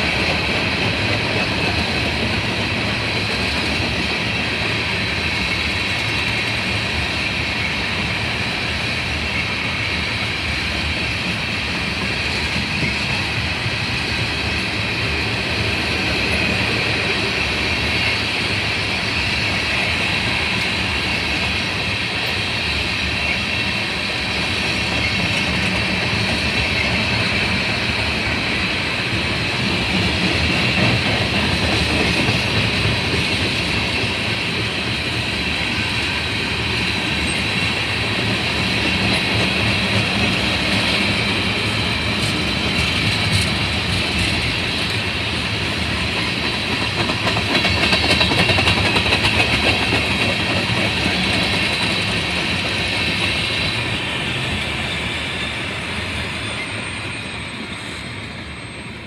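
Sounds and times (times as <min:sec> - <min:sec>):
train wheels rumbling on rails: 0:00.0 - 0:59.0
high wheel squeal: 0:52.8 - 0:59.0.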